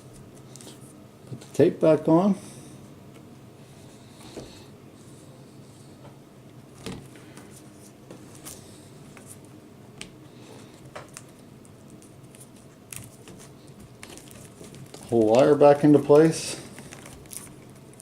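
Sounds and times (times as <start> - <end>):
faint steady hum: 0.0 - 18.0
rustling of tape and parts: 0.1 - 1.6, 6.8 - 18.0.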